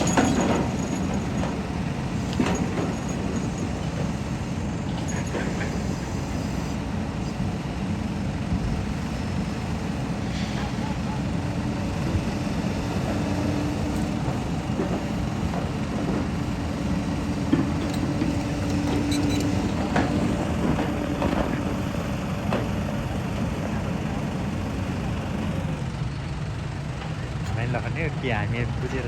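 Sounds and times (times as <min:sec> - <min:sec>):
engine running: 0:00.0 - 0:29.0.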